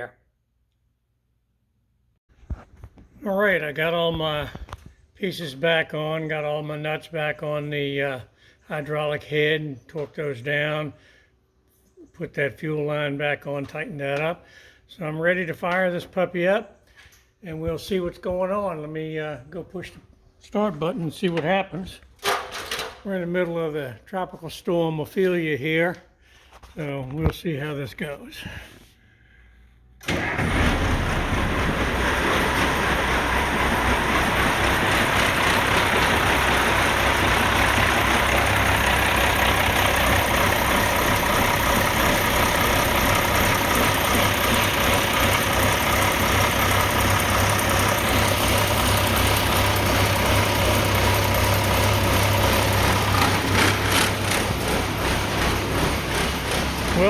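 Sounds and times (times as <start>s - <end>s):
diesel engine idling: 30.0s - 57.0s.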